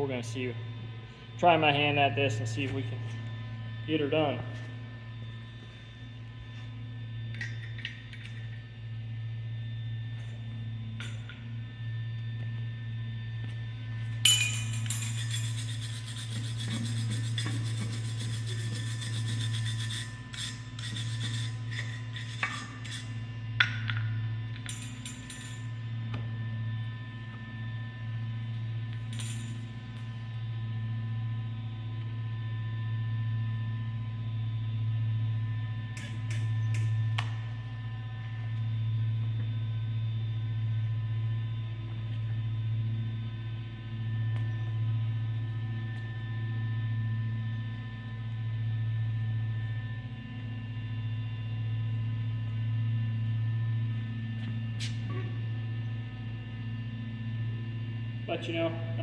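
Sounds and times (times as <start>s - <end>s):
electric welder humming: 13.4s - 25.9s.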